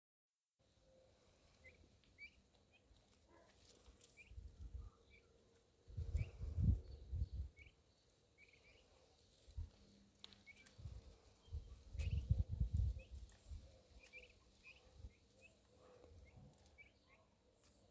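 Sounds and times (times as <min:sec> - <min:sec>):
high bird chirps: 0:11.5 - 0:13.2.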